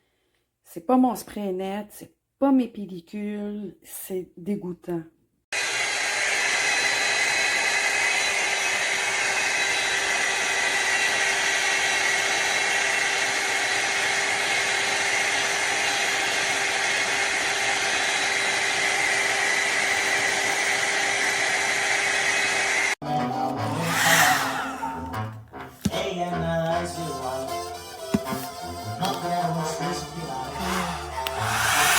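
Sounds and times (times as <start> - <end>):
hot air styler blowing air: 5.6 - 22.9, 23.7 - 25.1, 30.4 - 31.9
motor whine: 23.8 - 25.0, 30.6 - 31.9.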